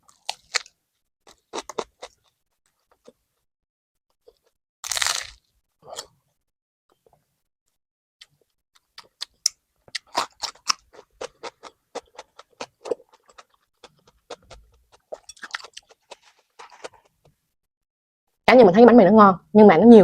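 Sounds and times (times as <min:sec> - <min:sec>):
biting crusty bread: 0:00.0 - 0:03.2, 0:04.3 - 0:06.1, 0:08.2 - 0:17.3
crunchy chewing: 0:00.0 - 0:03.2, 0:04.2 - 0:06.1, 0:08.2 - 0:17.3.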